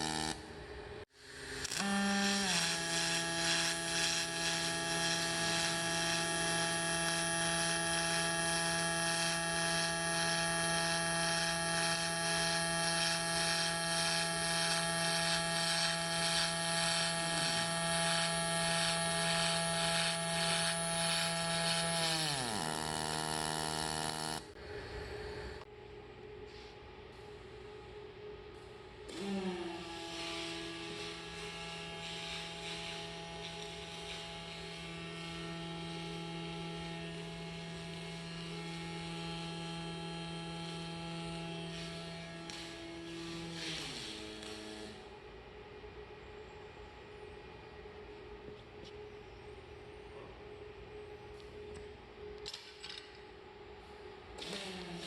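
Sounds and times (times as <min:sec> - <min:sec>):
welding arc buzzing and crackling: 0:00.0 - 0:00.6, 0:01.2 - 0:24.6, 0:28.5 - 0:45.1, 0:54.4 - 0:55.0.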